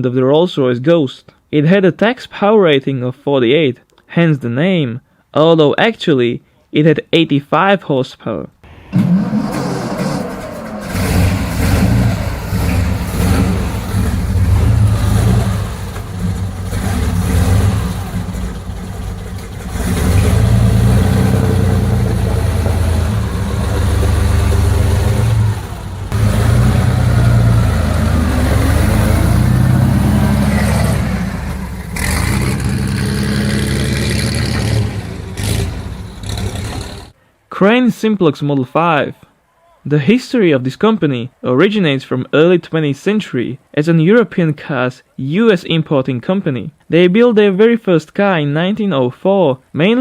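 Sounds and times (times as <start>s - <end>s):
six-cylinder engine revving: 8.7s - 37.1s.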